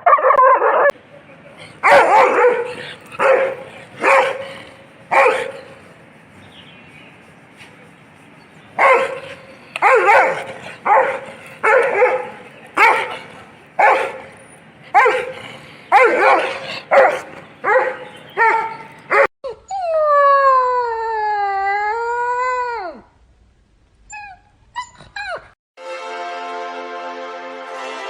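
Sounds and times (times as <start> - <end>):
dog barking: 0.0 - 1.0, 1.6 - 5.9, 8.8 - 19.3
dog howling: 1.6 - 5.8, 8.8 - 14.3, 14.9 - 22.4.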